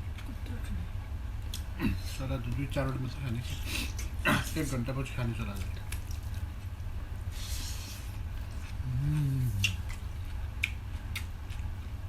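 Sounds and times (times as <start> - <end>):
low room hum: 0.0 - 12.0
wet chewing: 5.4 - 6.7, 8.3 - 11.8
person humming: 8.8 - 9.8
mouth clicks and smacks: 9.5 - 10.0.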